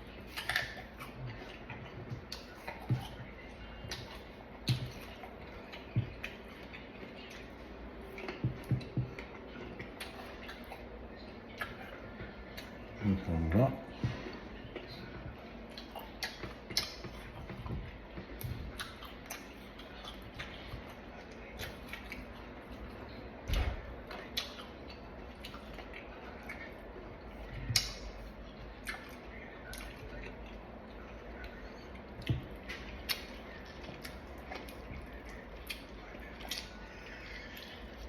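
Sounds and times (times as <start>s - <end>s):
mouth clicks and chewing: 0.0s - 13.2s, 14.0s - 38.0s.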